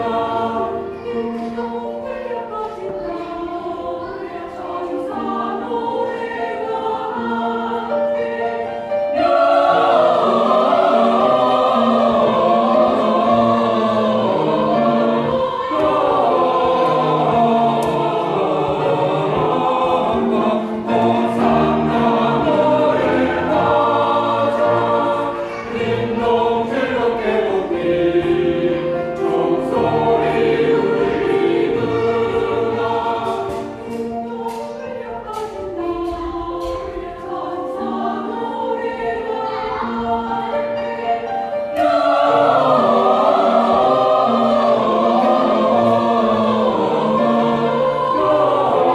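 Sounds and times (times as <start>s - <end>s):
choir singing in harmony: 0.0s - 48.9s.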